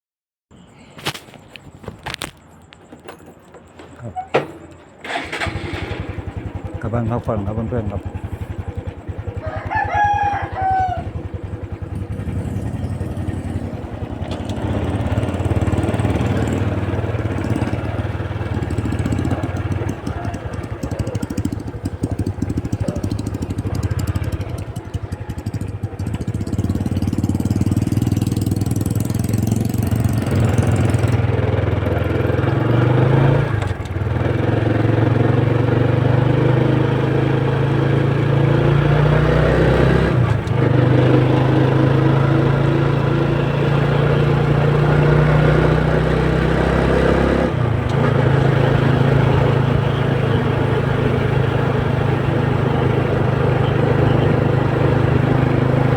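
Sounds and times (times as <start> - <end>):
small motorcycle engine running: 5.0 - 55.9
rooster crowing: 9.1 - 12.3.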